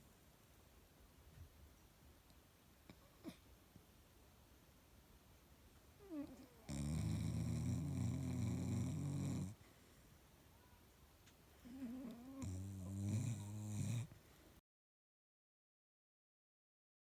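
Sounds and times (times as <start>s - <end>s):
dog snoring: 6.0s - 9.6s, 11.7s - 14.1s.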